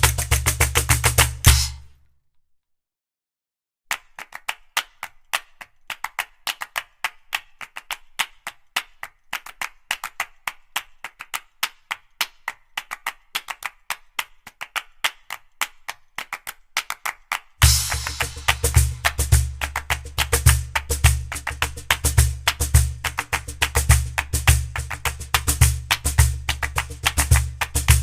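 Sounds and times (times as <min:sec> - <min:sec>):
fast percussive clicks music: 0:00.0 - 0:01.9, 0:17.6 - 0:28.0.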